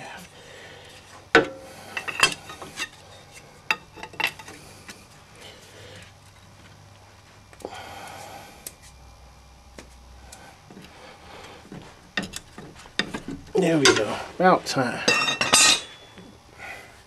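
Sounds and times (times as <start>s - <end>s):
metal clanks and knocks: 11.8s - 14.2s, 15.0s - 16.1s.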